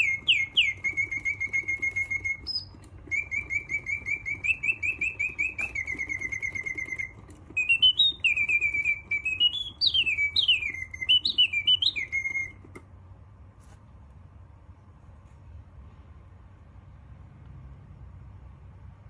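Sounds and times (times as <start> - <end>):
mechanical bird whistling: 0.0 - 12.6.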